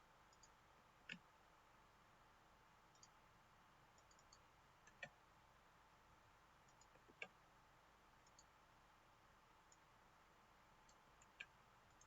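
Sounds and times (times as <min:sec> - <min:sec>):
faint computer clicks: 0:00.3 - 0:01.3, 0:02.9 - 0:03.2, 0:03.9 - 0:05.2, 0:06.6 - 0:07.4, 0:08.2 - 0:08.6, 0:10.8 - 0:12.0.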